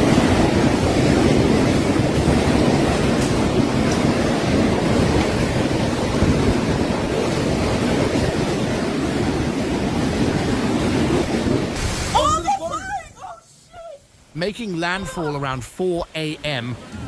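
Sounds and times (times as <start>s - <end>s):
strong wind rushing: 0.0s - 13.0s
wind buffeting microphone: 0.0s - 13.1s.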